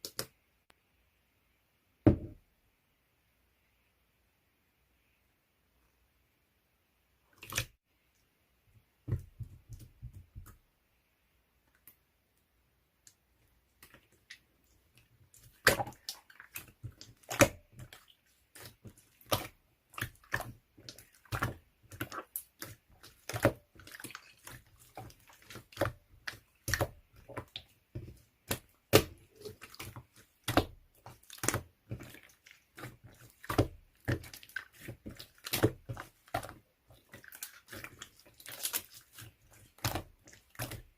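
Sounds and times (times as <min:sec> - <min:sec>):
slime squishing and popping: 0:15.5 - 0:40.9.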